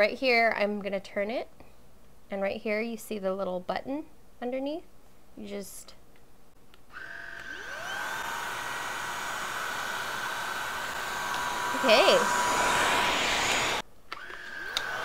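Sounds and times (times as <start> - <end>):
vacuum motor whining: 6.9 - 15.0.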